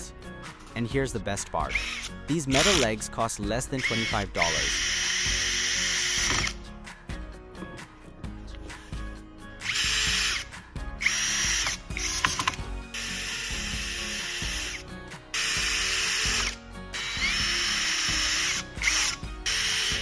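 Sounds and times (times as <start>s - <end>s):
power drill driving screws: 1.7s - 3.0s, 3.8s - 6.6s, 9.6s - 20.0s.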